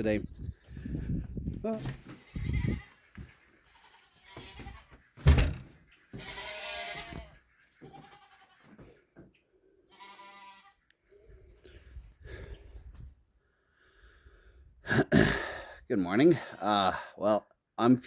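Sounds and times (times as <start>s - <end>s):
goats bleating: 2.1s - 5.0s, 6.1s - 8.8s, 9.9s - 10.8s.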